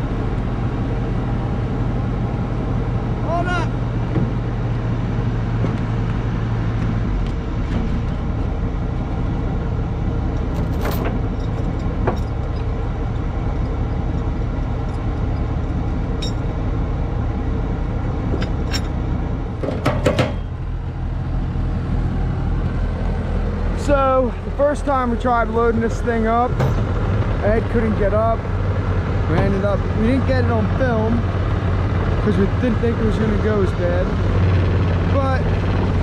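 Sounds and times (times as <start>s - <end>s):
skid steer engine droning: 0.0s - 36.0s
sharp knocks: 19.6s - 20.5s, 26.5s - 27.3s.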